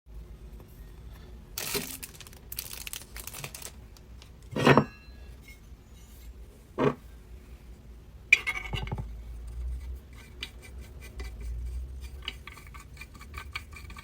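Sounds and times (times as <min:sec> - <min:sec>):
plastic packaging crinkling: 0:01.6 - 0:04.3.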